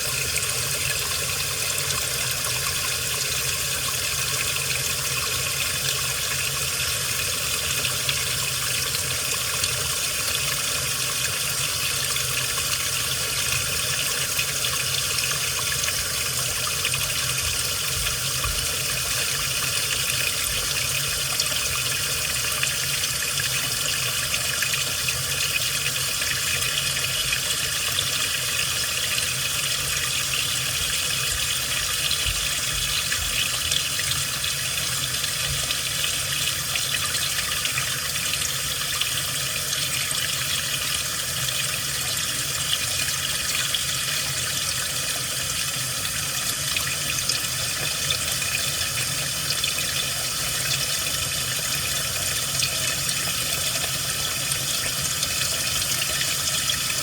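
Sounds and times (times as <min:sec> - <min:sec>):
washing machine water rushing: 0:00.0 - 0:57.0.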